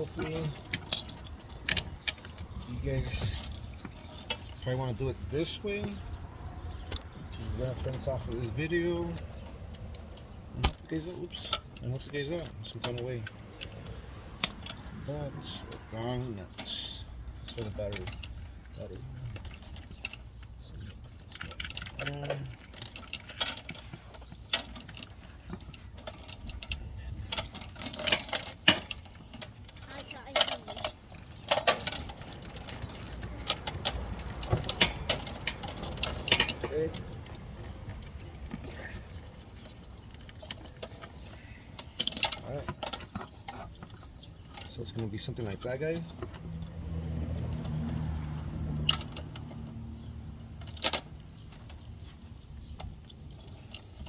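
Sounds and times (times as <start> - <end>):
metal clicks of hand tools: 0.0 - 4.6, 15.6 - 54.0
metal hardware clinks: 0.0 - 54.0
vehicle engine hum: 0.0 - 54.0.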